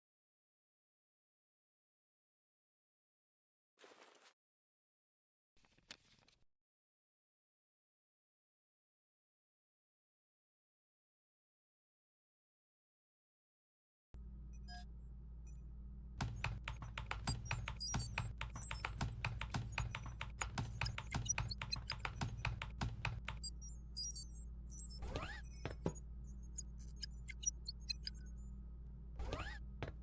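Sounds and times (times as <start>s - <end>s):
low electronic hum: 14.2s - 30.0s
rapid typing on keyboard: 16.2s - 23.6s, 26.6s - 28.2s.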